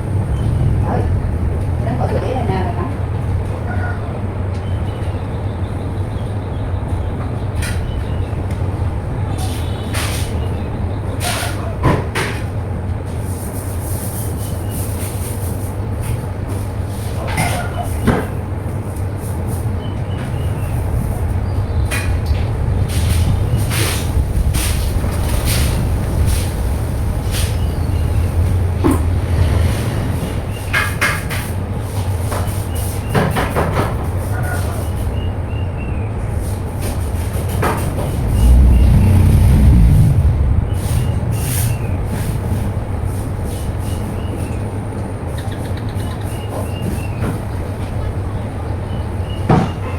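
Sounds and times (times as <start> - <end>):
wet vacuum cleaner drone: 38.0 - 43.1.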